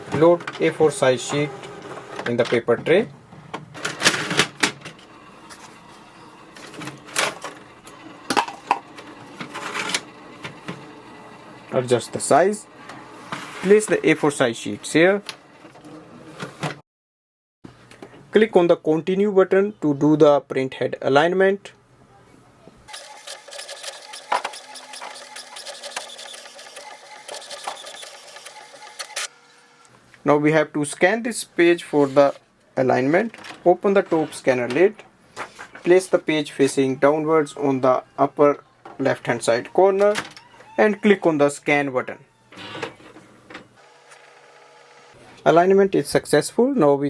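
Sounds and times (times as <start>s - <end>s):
inkjet printer printing: 1.0s - 2.3s, 3.8s - 14.3s, 22.9s - 29.9s, 42.5s - 45.2s
rapid printer clicks: 22.9s - 29.3s.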